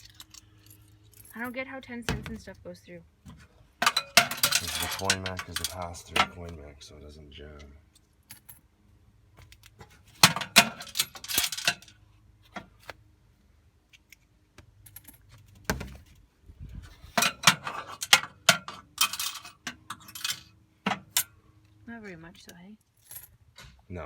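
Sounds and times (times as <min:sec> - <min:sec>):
coins clinking and jingling: 0:03.9 - 0:05.8, 0:17.9 - 0:20.5, 0:23.0 - 0:23.4.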